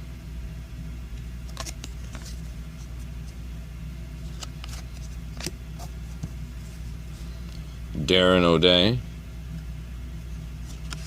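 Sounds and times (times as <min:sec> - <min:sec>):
low background hum: 0:00.0 - 0:11.0
trading cards flipped through: 0:01.4 - 0:03.4, 0:04.2 - 0:06.8, 0:10.6 - 0:11.0.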